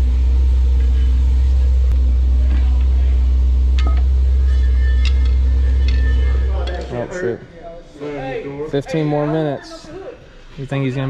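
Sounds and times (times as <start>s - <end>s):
machinery low rumble: 0.0s - 8.0s
faint steady hum: 0.0s - 11.0s.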